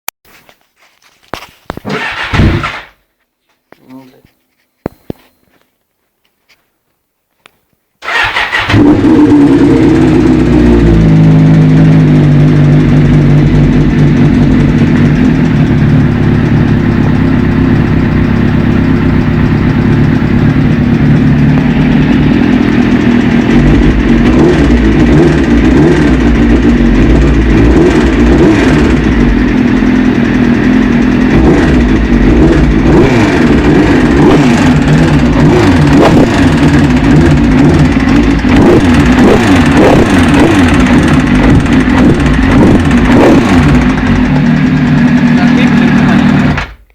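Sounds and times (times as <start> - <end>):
motorcycle engine running: 8.0 - 46.9
engine knocking: 10.2 - 46.8.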